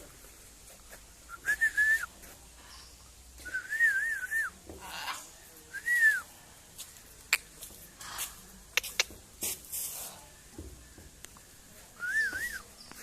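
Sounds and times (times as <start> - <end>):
whistled notes: 12.0 - 12.7.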